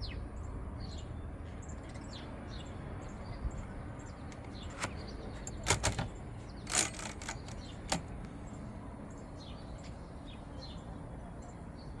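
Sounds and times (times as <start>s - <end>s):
birds chirping faintly: 0.0s - 12.0s
typewriter clacks: 4.4s - 8.2s.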